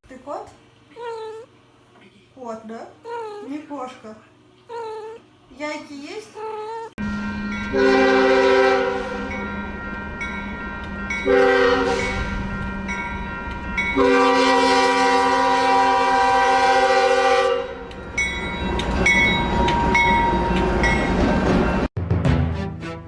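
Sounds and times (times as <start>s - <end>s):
train horn chord: 7.0s - 9.7s, 11.2s - 12.8s, 14.0s - 17.9s
passing train rumble: 7.0s - 21.9s
train clicks: 12.1s - 14.0s, 17.8s - 21.9s.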